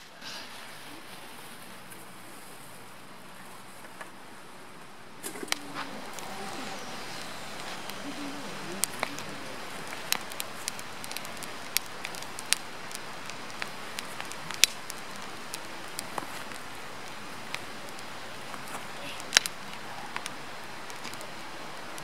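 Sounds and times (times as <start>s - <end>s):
campfire crackling and popping: 0.2s - 22.0s
fire hiss: 5.0s - 22.0s.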